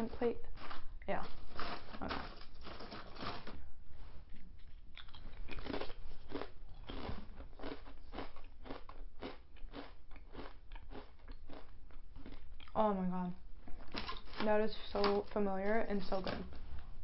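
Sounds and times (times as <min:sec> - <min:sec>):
chewing crunchy potato chips: 0:04.3 - 0:12.9.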